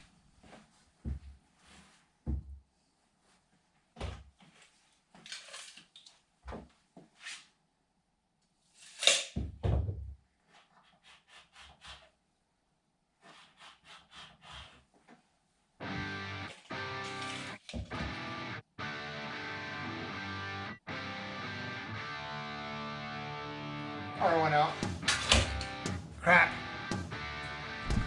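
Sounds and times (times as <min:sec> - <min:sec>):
hard objects knocking and thumping: 0:24.8 - 0:28.0
heavy thuds: 0:24.8 - 0:28.0.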